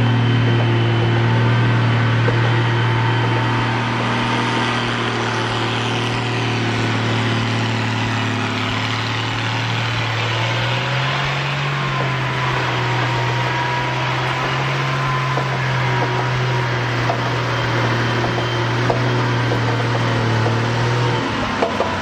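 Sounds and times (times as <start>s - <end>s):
heavy diesel engine running: 0.0s - 22.0s.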